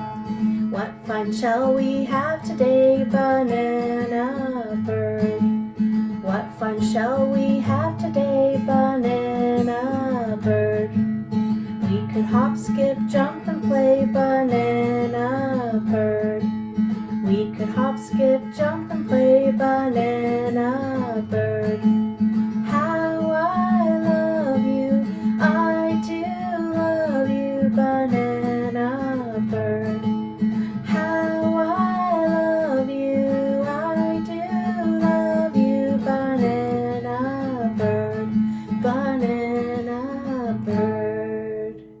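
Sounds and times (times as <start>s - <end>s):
strummed acoustic guitar: 0.0s - 42.0s
woman singing children's song: 0.6s - 5.6s, 6.2s - 11.0s, 11.8s - 16.6s, 17.2s - 22.0s, 22.6s - 30.0s, 30.8s - 42.0s.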